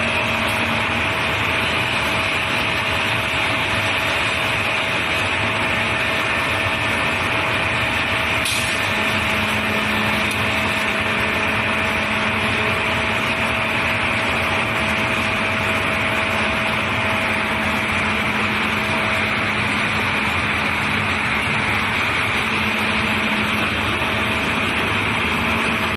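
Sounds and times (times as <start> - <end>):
low hum: 8.9 - 25.9.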